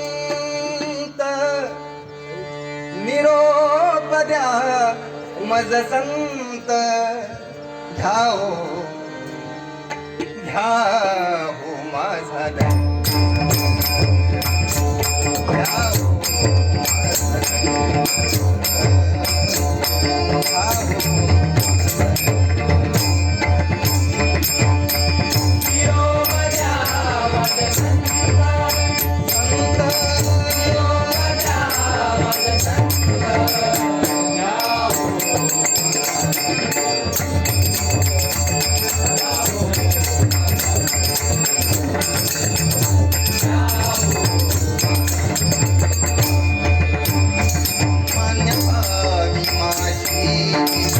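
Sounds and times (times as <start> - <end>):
steady percussion beat: 12.6 - 50.9.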